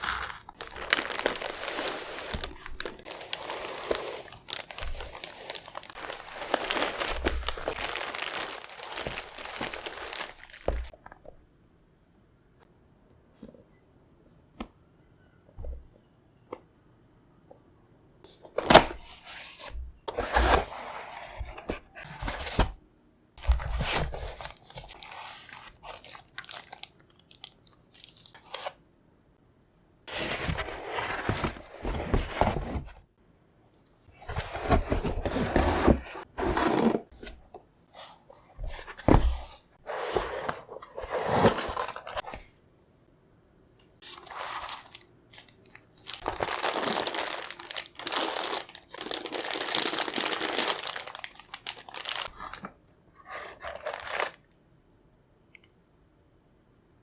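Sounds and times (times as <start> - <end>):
packaging rustling and crinkling: 0.0 - 11.0, 23.4 - 28.8, 30.1 - 33.0, 34.2 - 37.4, 38.6 - 42.5, 44.0 - 52.7, 53.3 - 54.4.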